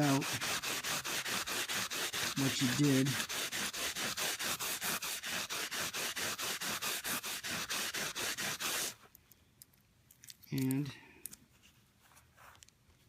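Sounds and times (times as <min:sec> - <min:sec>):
scouring pad rubbing on metal: 0:00.0 - 0:09.0.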